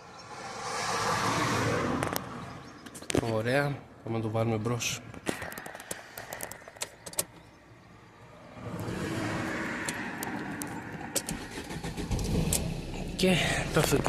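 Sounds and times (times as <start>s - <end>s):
sharp clicks: 5.2s - 7.5s.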